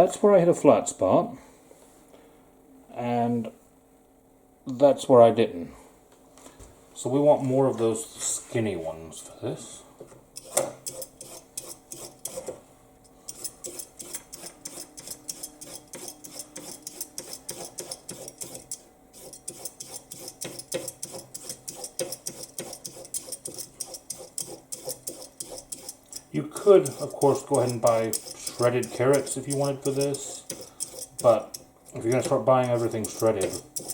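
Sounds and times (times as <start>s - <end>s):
peeler scraping carrot: 10.4s - 12.6s, 13.3s - 33.9s.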